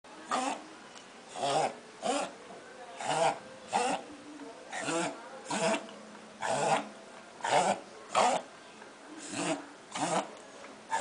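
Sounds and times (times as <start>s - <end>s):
dog coughing: 6.4s - 8.4s.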